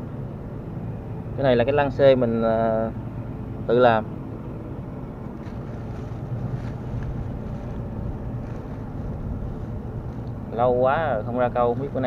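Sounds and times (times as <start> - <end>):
faint engine hum: 0.0 - 12.0
wind buffeting microphone: 4.6 - 12.0.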